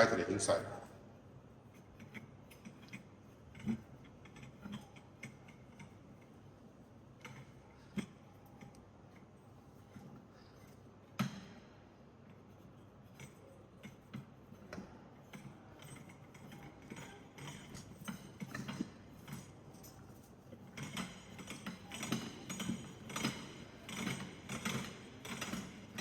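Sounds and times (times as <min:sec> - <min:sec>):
metal parts clicking and knocking: 0:01.7 - 0:06.3, 0:12.5 - 0:26.0.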